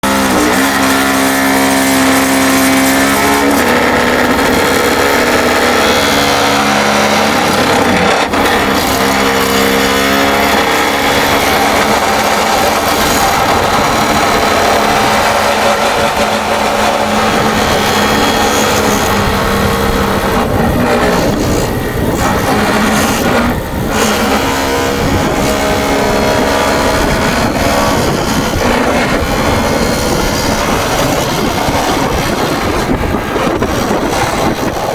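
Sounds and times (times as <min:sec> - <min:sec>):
hydraulic vibratory driver buzzing: 0:00.0 - 0:34.9
skid steer engine under load: 0:00.0 - 0:34.9.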